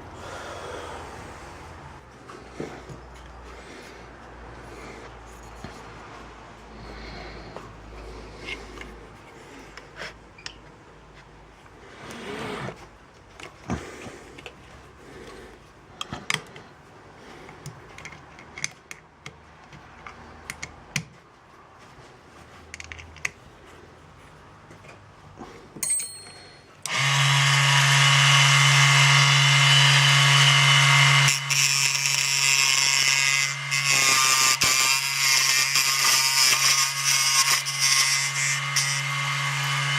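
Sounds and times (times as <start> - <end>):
clicks and knocks of handling: 17.4 - 21.2, 22.7 - 23.4.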